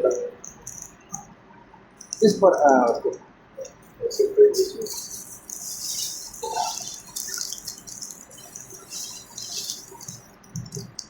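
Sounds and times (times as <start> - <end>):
water running from a tap: 4.7 - 11.0.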